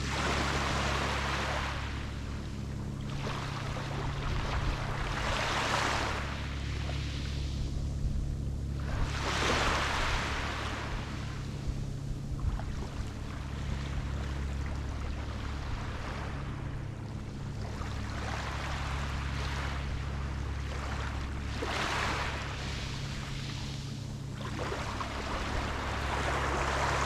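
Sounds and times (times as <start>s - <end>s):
sea waves breaking on beach: 0.0s - 2.4s, 3.0s - 7.6s, 8.8s - 11.4s, 17.6s - 27.0s
steady low rumble: 0.0s - 27.0s.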